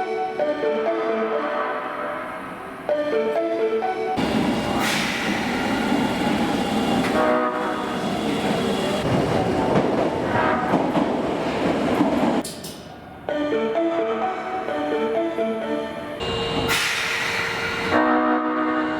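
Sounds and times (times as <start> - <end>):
train running on rails: 0.0 - 18.9
train horn: 0.9 - 2.5, 7.0 - 8.0, 10.2 - 10.9, 16.2 - 17.0, 17.8 - 18.9.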